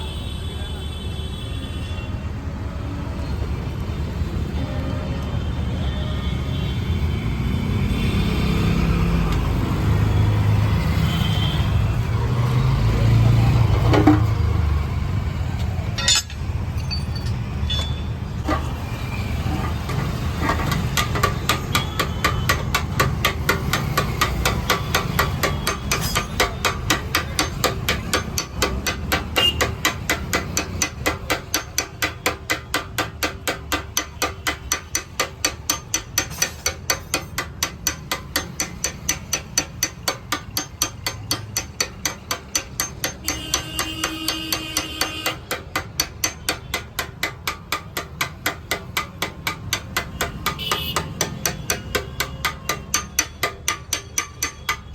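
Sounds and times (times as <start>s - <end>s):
hammer striking metal tank: 13.8s - 14.3s, 16.0s - 16.6s, 17.7s - 54.9s.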